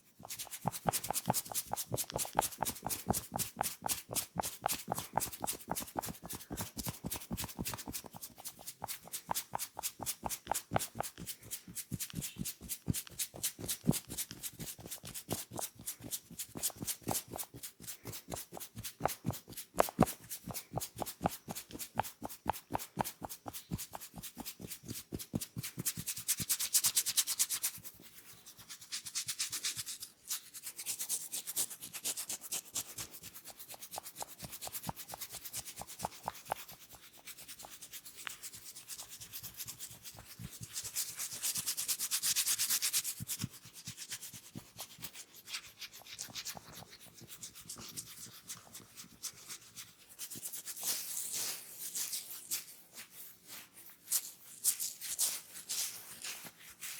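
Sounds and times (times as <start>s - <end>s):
hands massaging a head: 0.0s - 39.1s.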